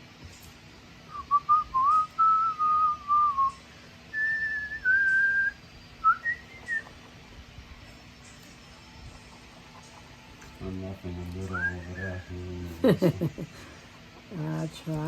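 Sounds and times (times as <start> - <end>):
person whistling a tune: 1.1 - 6.9, 11.5 - 12.4.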